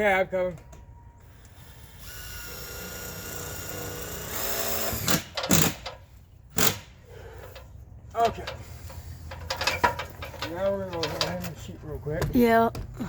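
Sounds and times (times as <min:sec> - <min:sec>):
cordless drill whining: 0:01.2 - 0:05.6.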